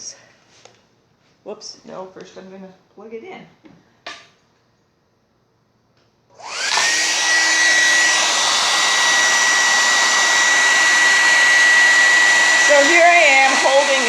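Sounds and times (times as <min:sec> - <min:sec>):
hairdryer running on high: 0:06.4 - 0:14.0.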